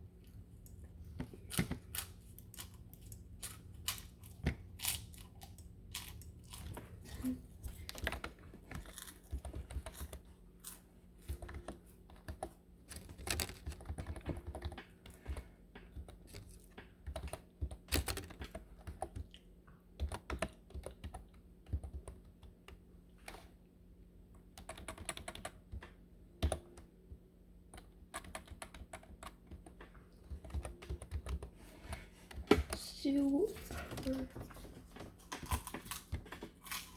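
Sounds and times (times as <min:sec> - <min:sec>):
faint low hum: 0:00.0 - 0:36.9
typing on computer keyboard: 0:11.4 - 0:19.3, 0:20.0 - 0:22.8, 0:24.6 - 0:26.9, 0:27.7 - 0:31.5.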